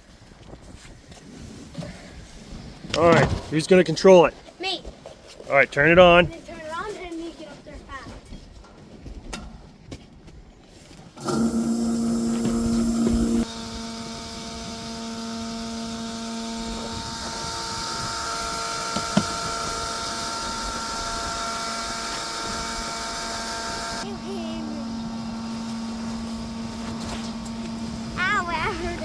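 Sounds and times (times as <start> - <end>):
electric fuel pump humming: 11.2 - 29.0.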